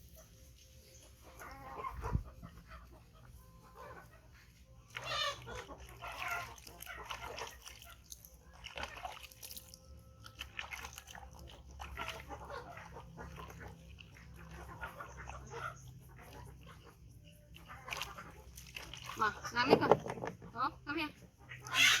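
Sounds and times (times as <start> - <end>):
baby monkey squeaking: 5.0 - 5.6, 21.6 - 22.0.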